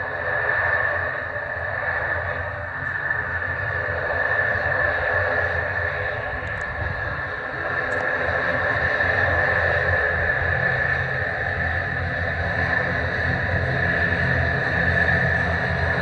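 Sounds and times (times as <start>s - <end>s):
turboprop engines running: 0.0s - 16.0s.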